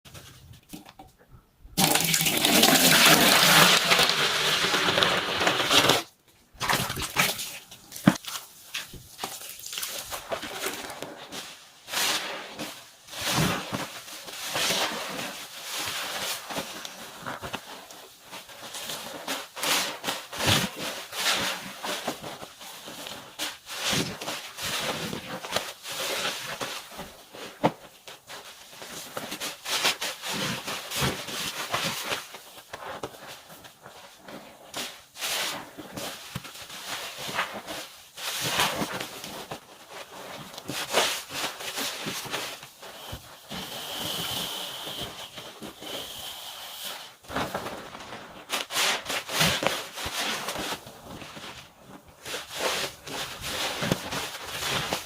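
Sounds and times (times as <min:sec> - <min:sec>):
water pouring: 0:01.8 - 0:04.6
sponge squishing suds: 0:01.8 - 0:55.0.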